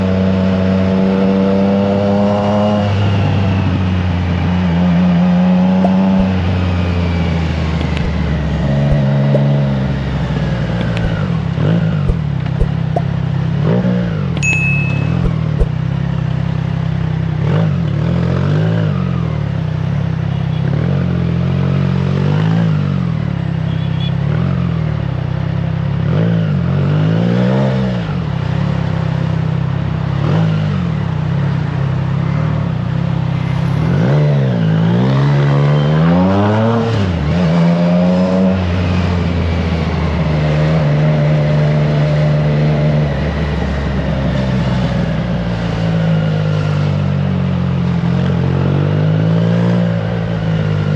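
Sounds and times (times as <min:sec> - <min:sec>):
motorcycle engine revving: 0:00.0 - 0:23.4.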